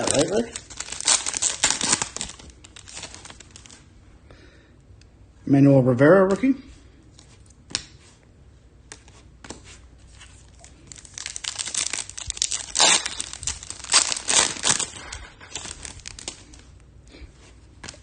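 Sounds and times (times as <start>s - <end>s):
foil wrapper crinkling and tearing: 0.0s - 3.8s, 10.3s - 16.7s.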